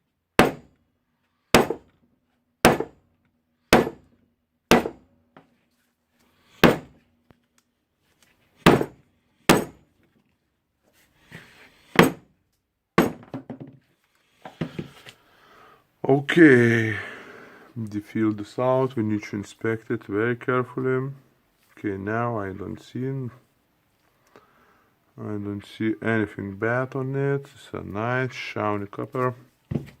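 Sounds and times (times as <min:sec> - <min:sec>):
sharp knocks on motor housing: 0:00.4 - 0:00.7, 0:01.6 - 0:01.9, 0:02.6 - 0:03.0, 0:03.8 - 0:04.1, 0:04.7 - 0:05.0, 0:06.6 - 0:07.0, 0:08.6 - 0:09.8, 0:12.0 - 0:12.3, 0:13.0 - 0:13.8.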